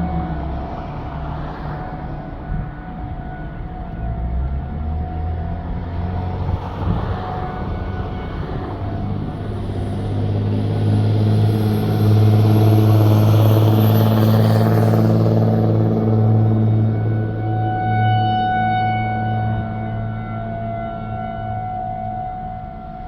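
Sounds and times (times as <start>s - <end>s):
vehicle engine humming: 0.0s - 23.0s.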